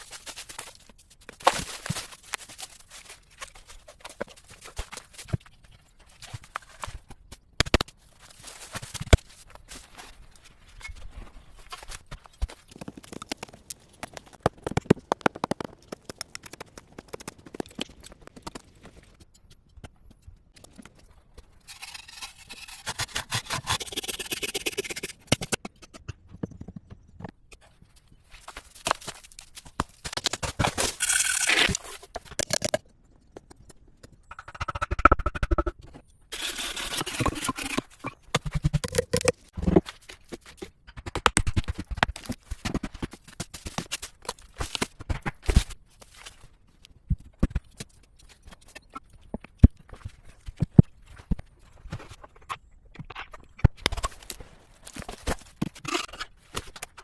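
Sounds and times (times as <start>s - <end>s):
scraping or rasping wood: 21.7s - 25.2s, 36.3s - 38.0s.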